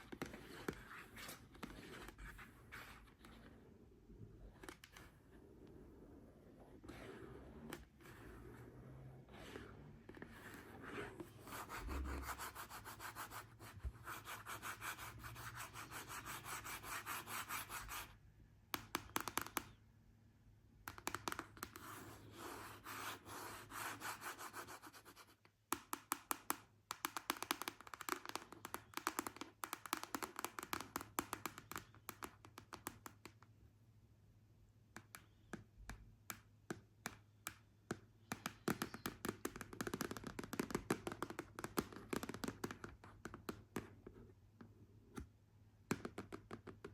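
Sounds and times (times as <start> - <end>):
sharp fingernail taps: 35.0 - 43.9.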